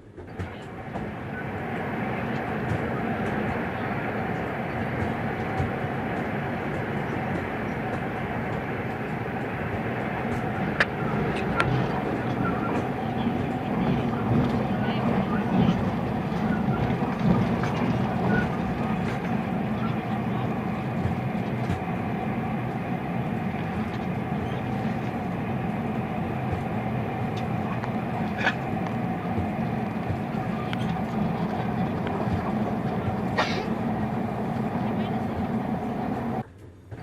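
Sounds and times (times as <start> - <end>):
train wheels rumbling on rails: 0.0 - 37.0.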